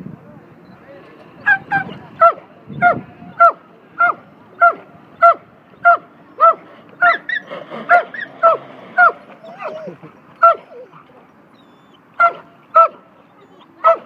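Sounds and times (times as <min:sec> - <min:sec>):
dog barking: 0:10.4 - 0:10.6, 0:12.2 - 0:13.0, 0:13.8 - 0:14.0.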